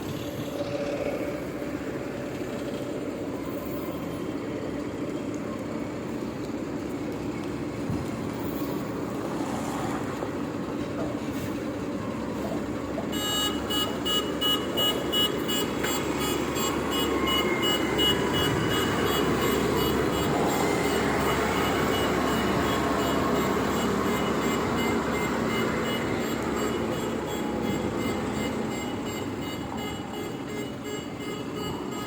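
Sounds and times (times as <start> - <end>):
diesel engine running: 0.0 - 32.0
reversing alarm beeping: 13.0 - 32.0.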